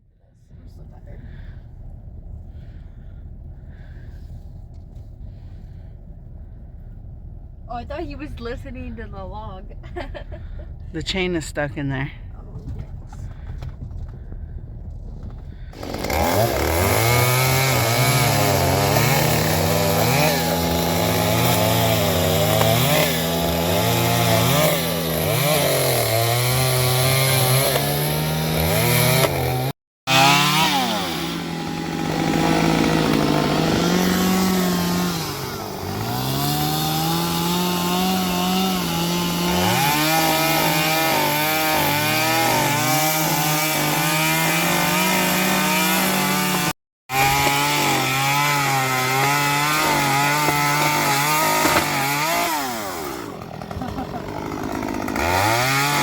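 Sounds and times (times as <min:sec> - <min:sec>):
chainsaw cutting wood: 0:15.3 - 0:56.0.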